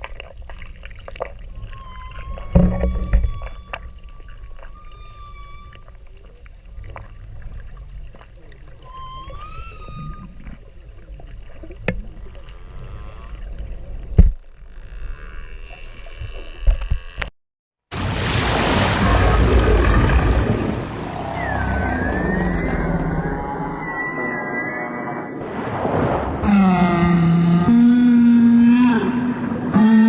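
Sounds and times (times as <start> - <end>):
upward-sweeping whale calls: 1.5 - 6.9, 8.7 - 10.6, 19.0 - 30.0
whale whistle-like calls: 1.5 - 6.9, 8.7 - 10.6, 21.0 - 25.4
whale moan: 1.6 - 6.4, 8.8 - 10.6, 19.2 - 25.4, 26.4 - 30.0.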